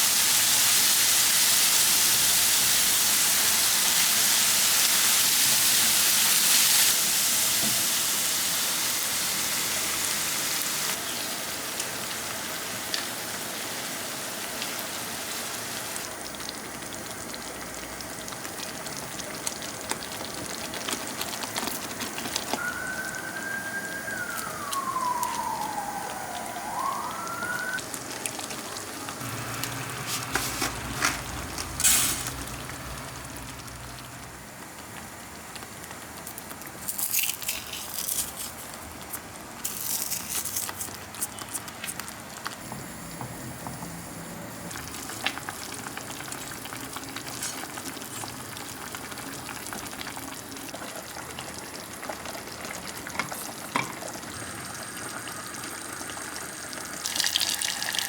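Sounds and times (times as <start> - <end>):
food frying in a pan: 0.0 - 58.0
wailing tone: 22.5 - 27.9.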